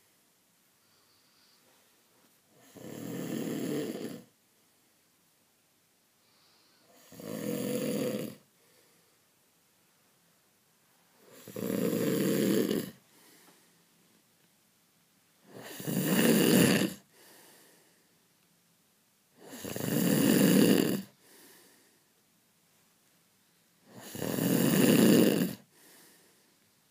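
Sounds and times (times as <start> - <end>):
person snoring loudly: 2.6 - 4.3, 6.8 - 8.4, 11.3 - 13.0, 15.5 - 17.1, 19.4 - 21.2, 23.9 - 25.7.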